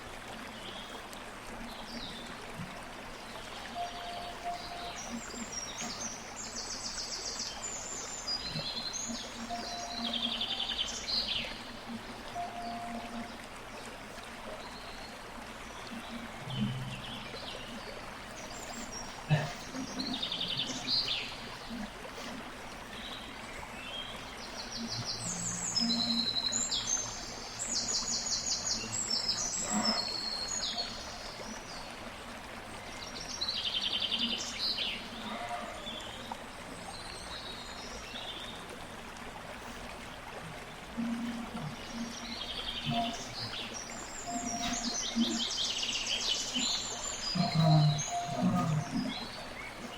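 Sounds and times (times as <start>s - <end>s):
rushing water: 0.0s - 49.9s
birds chirping in trills: 3.3s - 31.8s, 33.3s - 38.5s, 39.7s - 49.9s.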